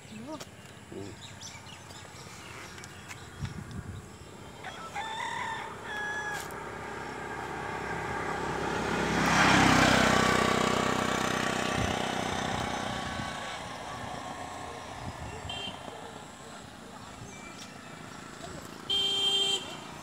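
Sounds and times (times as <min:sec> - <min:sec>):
rooster crowing: 0:04.6 - 0:06.6
vehicle passing: 0:05.2 - 0:20.0.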